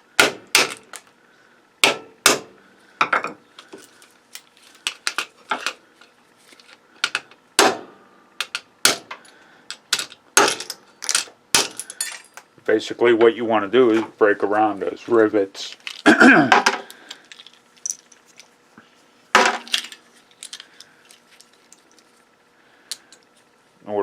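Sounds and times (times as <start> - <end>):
hammer striking circuit breaker: 0.2 - 1.0, 1.8 - 2.6, 7.1 - 9.2, 10.0 - 10.8.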